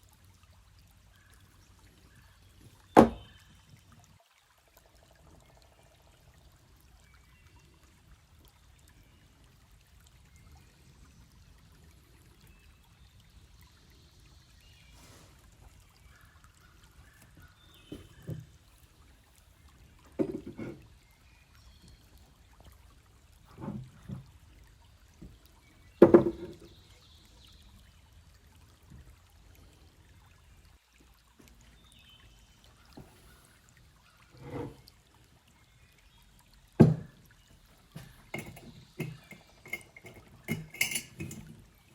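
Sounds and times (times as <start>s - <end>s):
irregular knocks and clunks: 3.0s - 3.3s, 17.9s - 18.6s, 20.1s - 20.8s, 23.5s - 24.3s, 26.0s - 26.7s, 36.8s - 37.2s.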